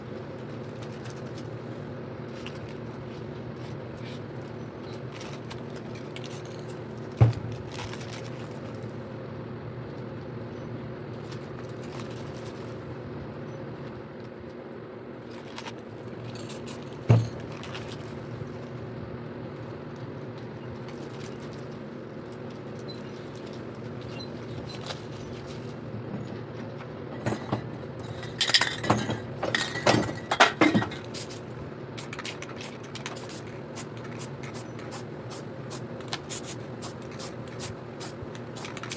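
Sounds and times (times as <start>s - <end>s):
low mechanical hum: 0.0s - 38.9s.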